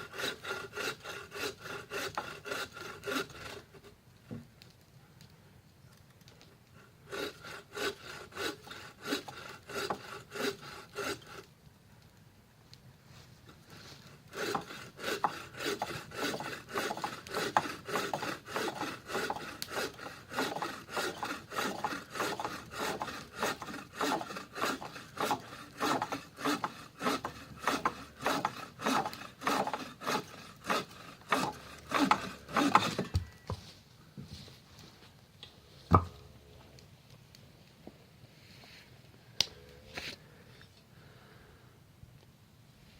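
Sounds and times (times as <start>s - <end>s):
hand saw cutting wood: 0.0s - 3.9s, 7.1s - 11.5s, 13.8s - 33.3s.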